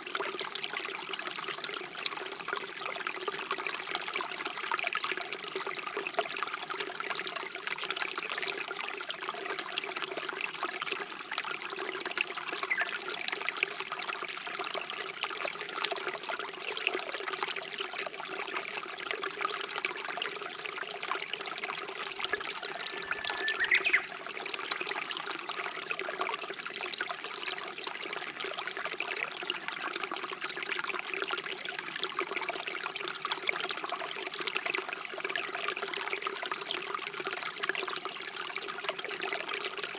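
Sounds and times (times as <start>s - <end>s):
stream water trickling: 0.0s - 39.9s
bird call: 12.7s - 13.0s, 22.6s - 24.1s.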